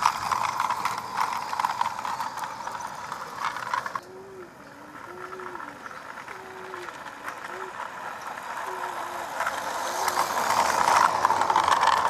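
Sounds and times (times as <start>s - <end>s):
model train motor clattering: 0.0s - 12.0s
bird cooing: 4.0s - 10.2s.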